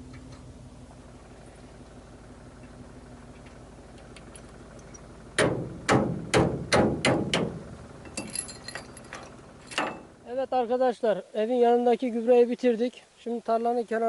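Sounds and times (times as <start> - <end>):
tractor engine idling: 0.0 - 10.9.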